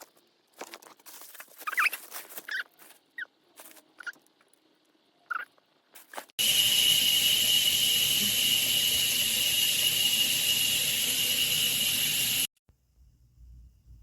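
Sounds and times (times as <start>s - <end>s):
shower head spraying water: 6.4s - 12.5s.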